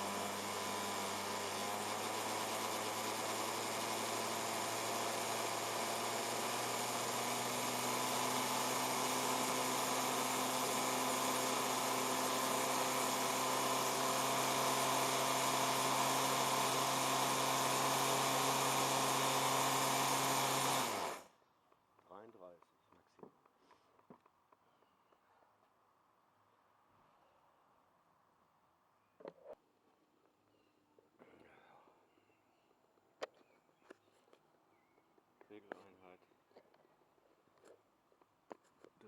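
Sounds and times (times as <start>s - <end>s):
electric router motor whining: 0.0s - 21.3s.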